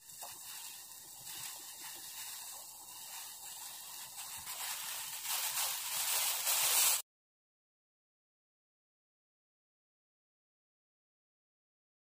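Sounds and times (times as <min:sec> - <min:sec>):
pan of water hissing on stove: 0:00.0 - 0:07.0.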